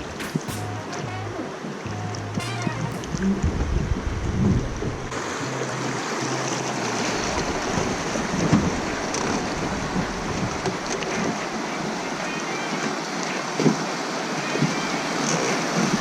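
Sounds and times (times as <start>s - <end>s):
wind on microphone: 3.0s - 5.2s
river water rushing: 5.1s - 16.0s.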